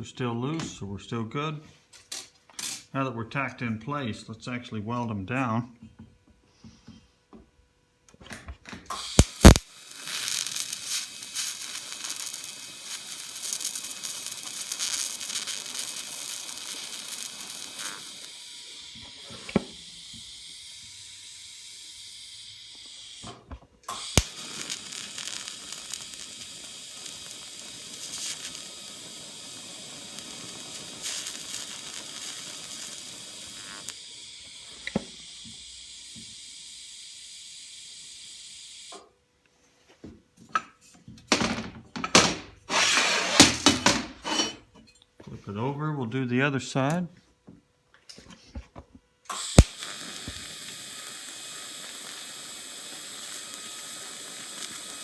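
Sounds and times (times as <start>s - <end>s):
arc welding crackling hiss: 8.9s - 39.1s, 41.4s - 44.4s, 49.3s - 55.0s.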